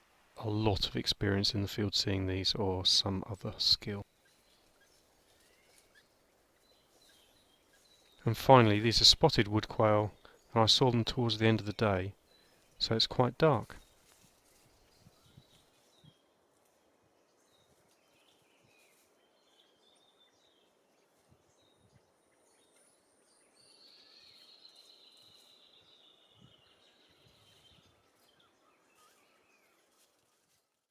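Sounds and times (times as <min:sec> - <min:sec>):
faint bird chirps: 0:17.3 - 0:30.1.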